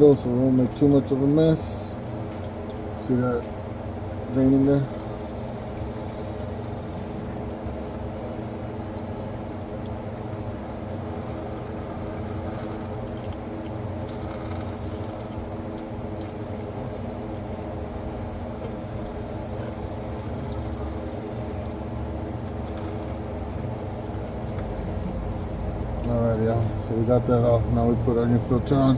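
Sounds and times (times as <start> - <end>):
steady low hum: 0.0 - 28.9
oil trickling into a bucket: 4.0 - 28.9.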